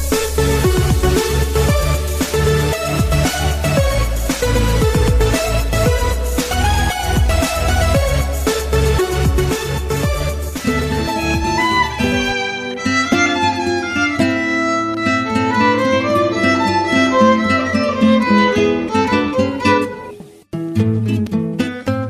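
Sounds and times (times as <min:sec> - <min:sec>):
heavy bass beat: 0:00.0 - 0:12.4
violin melody: 0:00.0 - 0:20.3
plucked guitar: 0:00.0 - 0:22.0.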